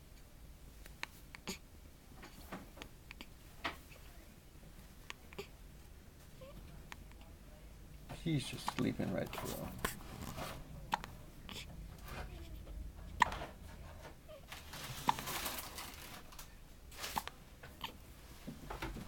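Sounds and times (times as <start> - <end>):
pet hiccuping: 1.3 - 1.6, 5.1 - 5.6, 10.9 - 13.6, 14.3 - 15.4.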